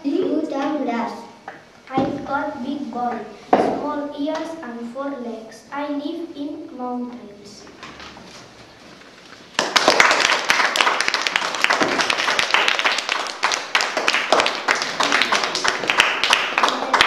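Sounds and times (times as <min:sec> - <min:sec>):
children applauding: 0:09.5 - 0:17.0.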